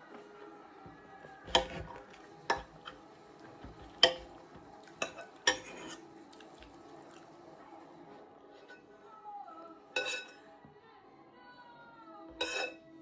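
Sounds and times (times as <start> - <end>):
cutlery clinking on plate: 1.2 - 6.7, 10.0 - 10.4, 12.3 - 12.9.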